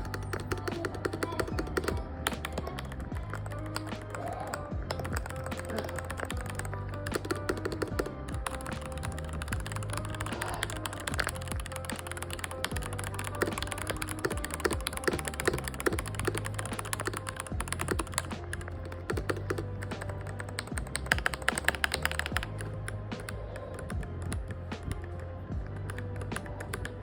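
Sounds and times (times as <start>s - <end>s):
background music with bass line: 0.0s - 27.0s
mechanical keyboard typing: 0.0s - 27.0s.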